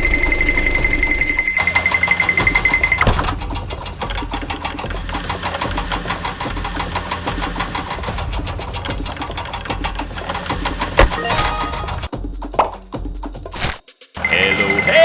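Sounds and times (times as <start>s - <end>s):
small motor clattering: 0.0s - 11.2s
low hum: 0.0s - 12.1s.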